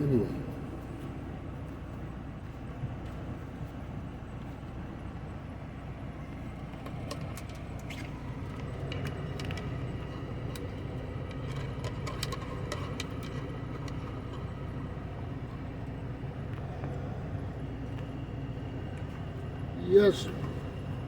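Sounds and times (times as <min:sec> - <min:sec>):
engine idling: 0:00.0 - 0:21.0
light clicks and clinks: 0:06.7 - 0:15.9.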